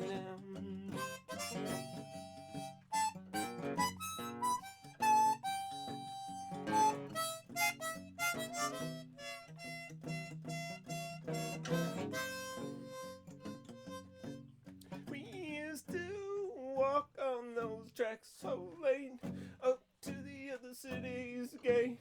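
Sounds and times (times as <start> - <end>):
harmonica melody: 0.0 - 14.6
strummed acoustic guitar: 0.0 - 22.0.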